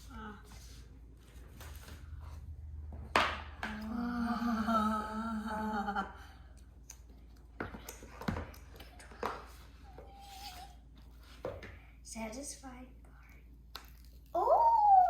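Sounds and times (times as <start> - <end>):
person humming: 3.7 - 6.2.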